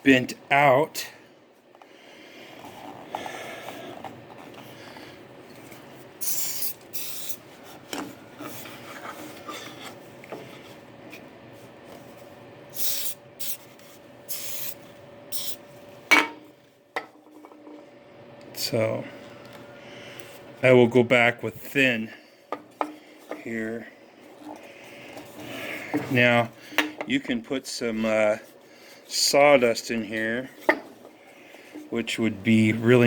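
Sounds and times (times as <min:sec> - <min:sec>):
short hissing bursts: 0:06.2 - 0:07.4, 0:12.7 - 0:13.7, 0:14.3 - 0:15.6.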